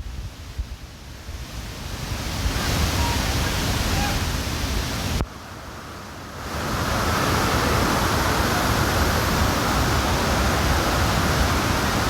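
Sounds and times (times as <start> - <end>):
waterfall rushing: 1.8 - 12.0.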